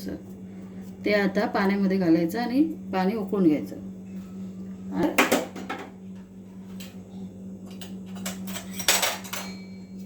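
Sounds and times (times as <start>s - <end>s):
steady low hum: 0.0s - 10.0s
kitchen utensils clinking: 7.7s - 10.0s.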